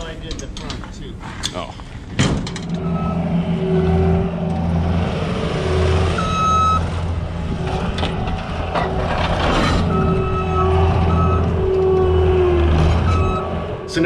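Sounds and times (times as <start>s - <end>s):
diesel engine running: 1.9s - 14.0s
short high beep: 2.8s - 4.3s.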